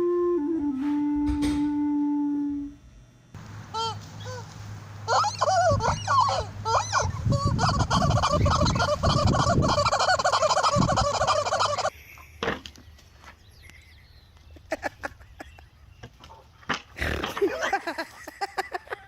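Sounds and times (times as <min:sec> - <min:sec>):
turkeys gobbling: 0:05.1 - 0:11.9.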